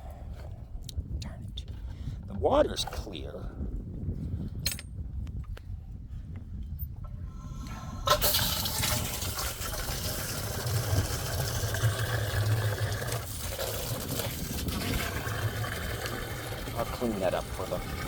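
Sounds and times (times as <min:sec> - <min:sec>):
water pouring and splashing: 0:08.1 - 0:18.0.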